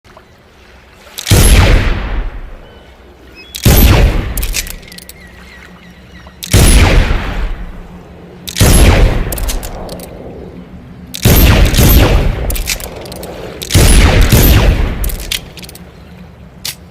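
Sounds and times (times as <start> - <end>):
faint clicks: 4.3 - 5.2.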